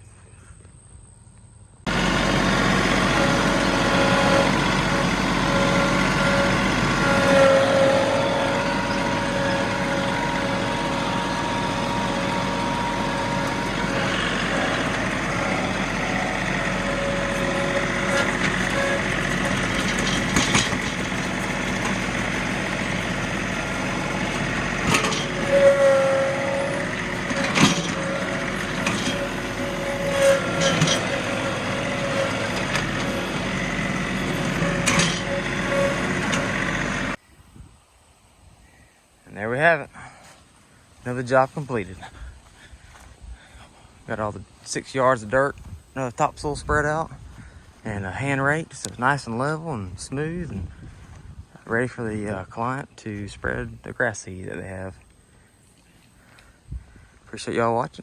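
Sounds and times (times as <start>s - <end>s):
heavy machine engine running: 1.9s - 37.2s
sharp knocks and clanks: 1.9s - 37.2s
steady machine whine: 1.9s - 37.2s.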